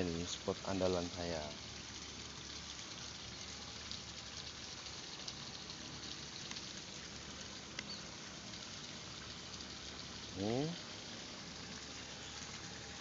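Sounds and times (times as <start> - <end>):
river water flowing: 0.0 - 13.0
faint small clicks: 7.7 - 8.0.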